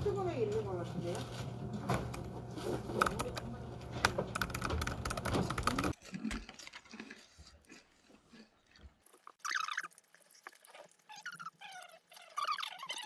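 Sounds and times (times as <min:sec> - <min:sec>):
busy background with hum: 0:00.0 - 0:06.0
keyboard key clicks: 0:04.0 - 0:05.9.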